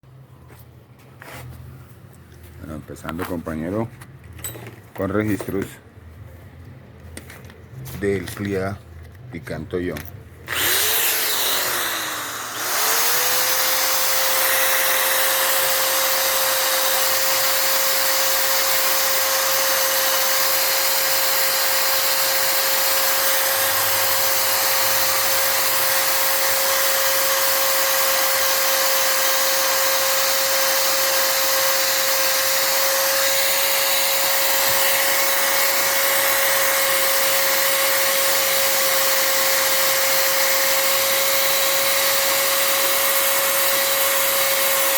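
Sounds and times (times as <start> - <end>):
electric motor whining with air rush: 10.4 - 44.9.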